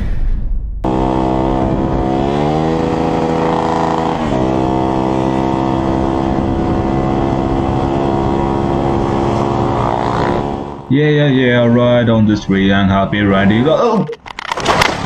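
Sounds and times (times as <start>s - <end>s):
motorcycle engine at high revs: 0.8s - 10.9s.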